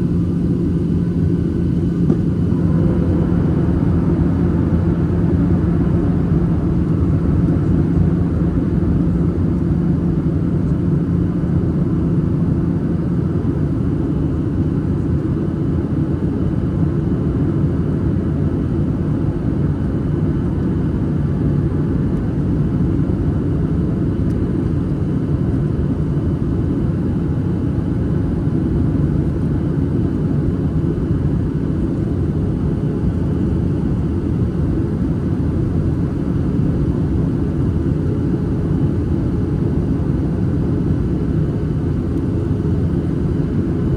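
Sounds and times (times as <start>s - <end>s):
low hum: 0.0s - 13.2s
airplane cabin rumble: 0.0s - 43.9s.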